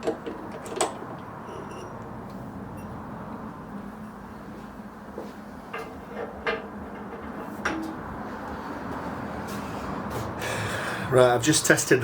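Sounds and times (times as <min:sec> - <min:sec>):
small metal workpiece clinking: 0:00.0 - 0:02.0.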